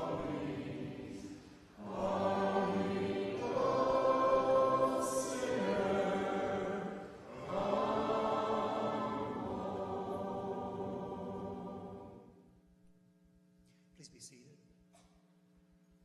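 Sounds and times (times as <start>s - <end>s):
congregation singing a hymn: 0.0s - 12.4s.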